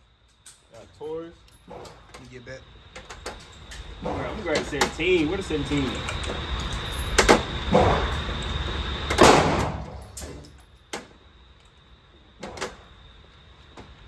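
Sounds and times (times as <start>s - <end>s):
handgun shots with echo: 9.2s - 9.8s.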